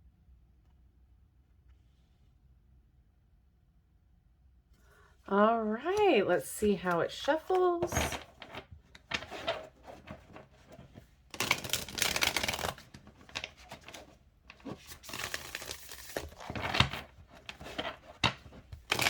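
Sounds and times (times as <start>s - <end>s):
cards being shuffled by hand: 6.8s - 19.0s.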